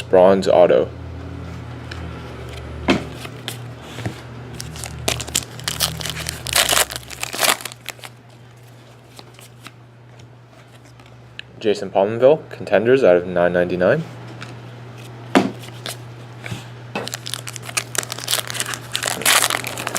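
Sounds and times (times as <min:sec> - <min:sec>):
cards clicking and rustling: 0:04.6 - 0:08.1, 0:17.0 - 0:19.9
wrapper crinkling and tearing: 0:04.6 - 0:08.2, 0:17.0 - 0:19.9.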